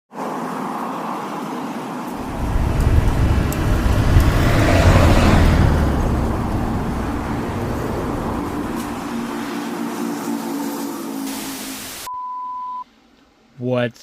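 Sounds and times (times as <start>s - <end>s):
vehicle passing by: 2.1s - 10.9s.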